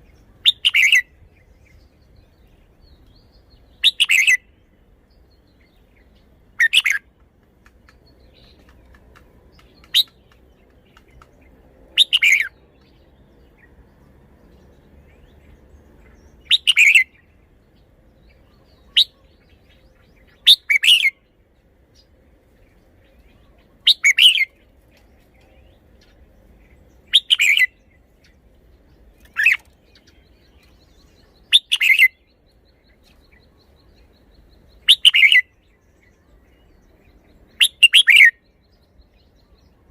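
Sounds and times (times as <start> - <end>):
bird singing short phrases: 12.0 - 22.1, 23.0 - 39.9.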